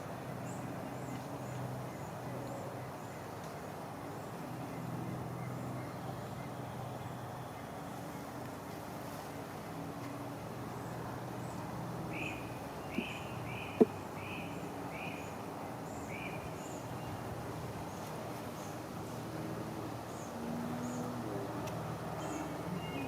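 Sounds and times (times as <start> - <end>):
low hum of bees: 0.0 - 23.0
songbird chirping: 10.7 - 18.8, 19.7 - 23.0.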